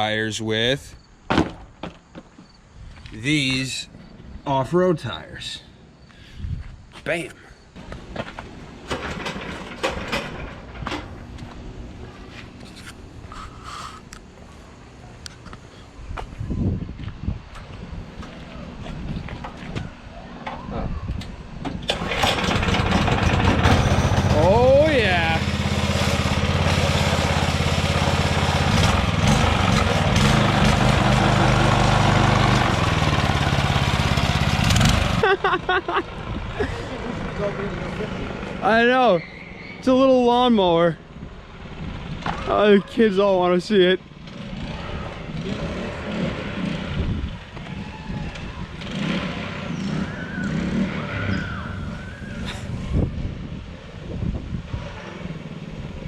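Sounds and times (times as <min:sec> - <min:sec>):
go-kart engine running: 0:21.9 - 0:38.7, 0:44.0 - 0:52.5.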